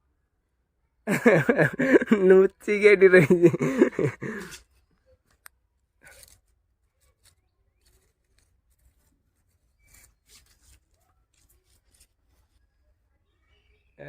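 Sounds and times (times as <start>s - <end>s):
faint small clicks: 4.9s - 6.3s.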